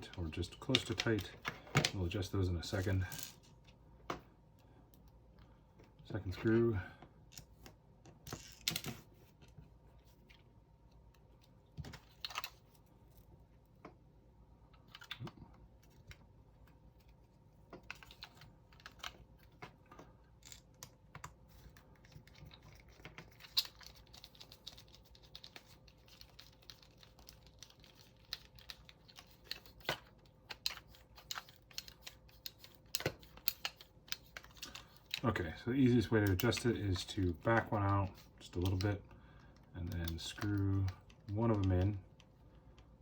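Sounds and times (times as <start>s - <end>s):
faint steady hum: 0.0s - 43.0s
plastic parts being handled: 14.8s - 35.4s.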